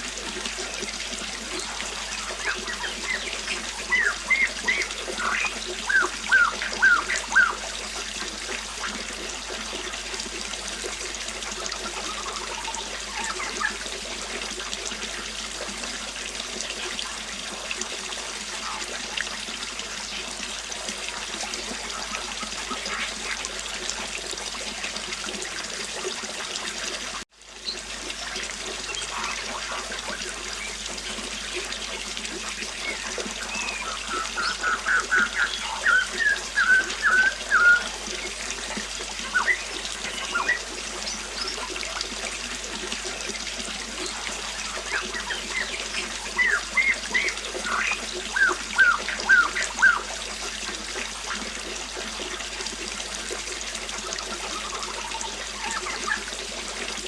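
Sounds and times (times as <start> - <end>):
river water flowing: 0.0 - 57.0
bird chirping: 2.0 - 7.6, 32.8 - 38.4, 39.2 - 41.7.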